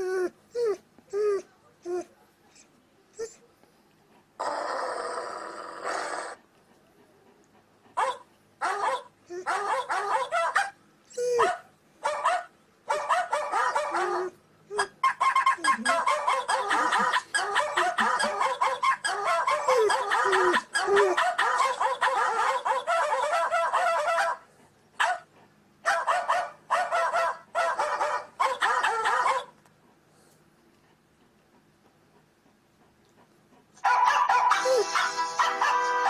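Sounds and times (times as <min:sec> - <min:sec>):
dog barking: 0:08.0 - 0:10.8, 0:11.4 - 0:24.4, 0:25.0 - 0:29.5, 0:33.8 - 0:36.0.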